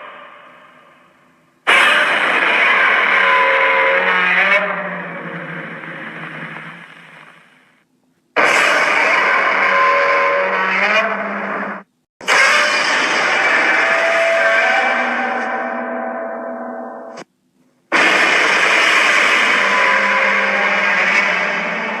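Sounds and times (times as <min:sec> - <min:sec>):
monster roar: 0:01.9 - 0:06.7, 0:08.4 - 0:15.9, 0:18.0 - 0:22.0.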